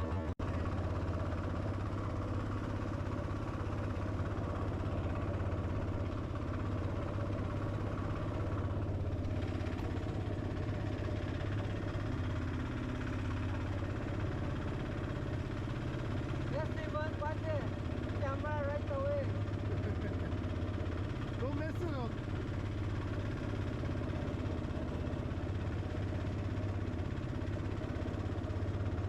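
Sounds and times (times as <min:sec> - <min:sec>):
outboard motor running: 0:00.0 - 0:29.0.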